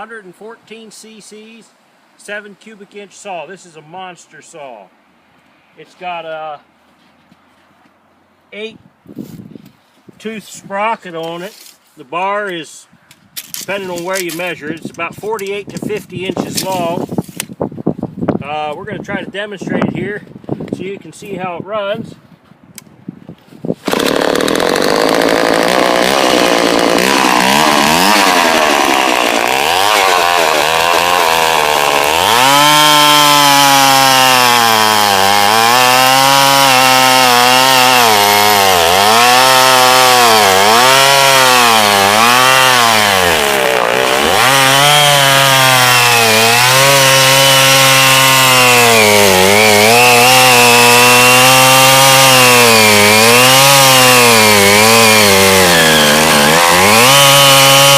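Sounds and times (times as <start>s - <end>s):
chainsaw engine revving: 23.8s - 57.9s.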